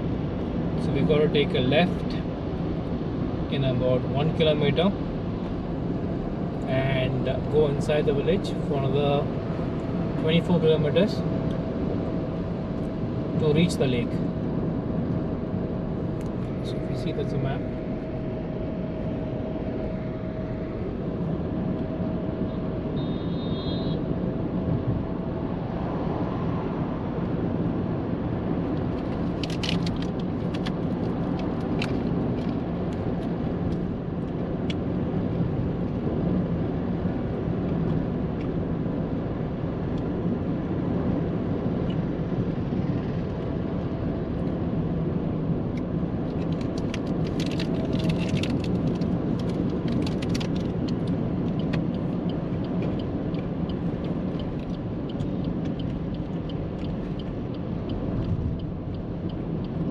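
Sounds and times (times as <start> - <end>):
car road and engine noise: 0.0 - 59.9.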